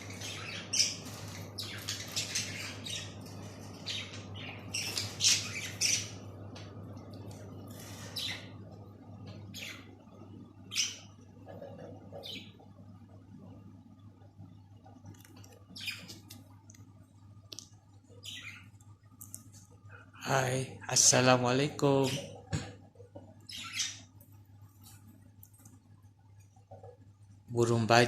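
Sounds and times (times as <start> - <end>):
budgerigars chattering and squawking: 0.0 - 6.2, 7.8 - 8.6, 15.8 - 16.2, 18.2 - 18.7, 23.4 - 24.1.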